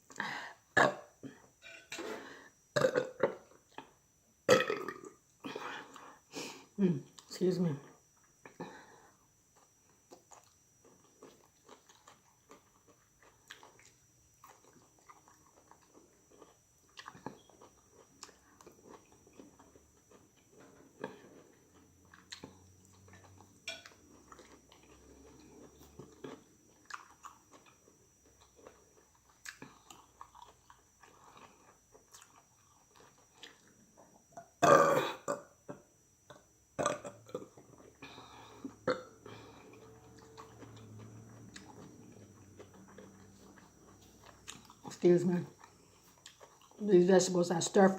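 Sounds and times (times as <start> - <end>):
loud burp: 0.8 - 1.1, 2.7 - 3.4, 4.5 - 5.2, 34.6 - 35.5, 36.8 - 37.5, 38.8 - 39.2
chewing and mouth sounds: 9.5 - 34.5, 36.3 - 46.9.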